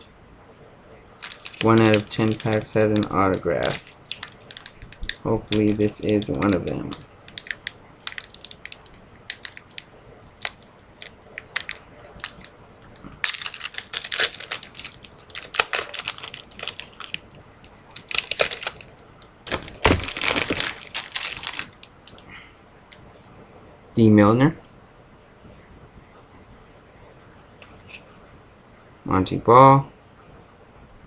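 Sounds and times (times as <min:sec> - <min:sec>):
card pack wrapper tearing: 0:01.2 - 0:09.8, 0:10.4 - 0:17.3, 0:17.9 - 0:18.9, 0:19.5 - 0:22.2
wrapper crinkling: 0:01.2 - 0:22.3.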